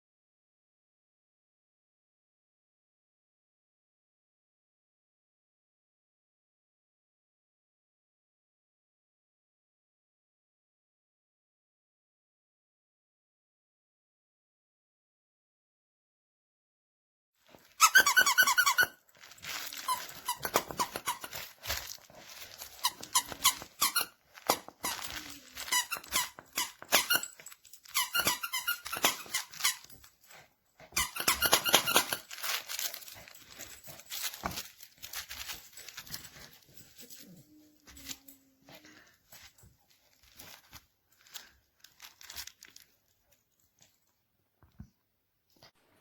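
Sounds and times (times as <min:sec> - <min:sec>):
dog toy squeaker squeaking: 0:17.6 - 0:30.0, 0:30.9 - 0:34.3.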